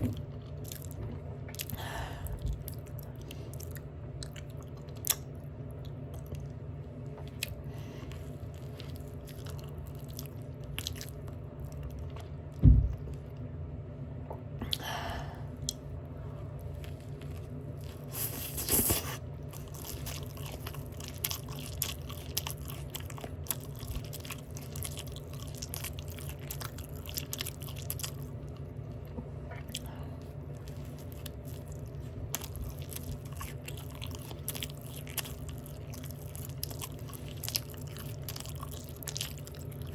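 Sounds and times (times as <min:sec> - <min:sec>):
open-mouth chewing: 0:07.2 - 0:12.6, 0:16.6 - 0:39.9
loud low thump: 0:12.6 - 0:13.0.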